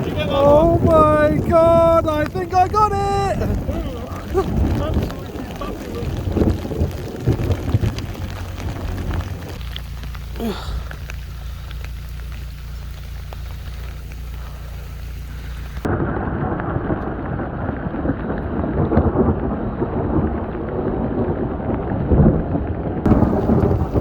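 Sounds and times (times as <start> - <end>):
dense downpour: 0.0 - 24.0
rain falling: 0.0 - 24.0
rumbling thunder: 0.0 - 24.0
steady low hum: 3.3 - 15.9.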